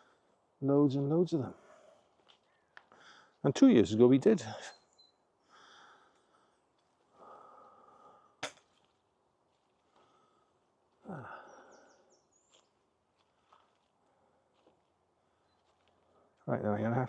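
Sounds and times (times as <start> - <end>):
faint high bird chirps: 4.5 - 5.3, 11.1 - 12.8.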